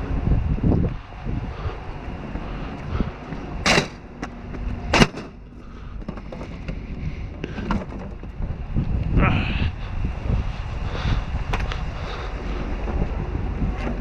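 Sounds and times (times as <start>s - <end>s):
low wind rumble: 0.0s - 14.0s
trash scraping and clattering: 3.6s - 8.4s.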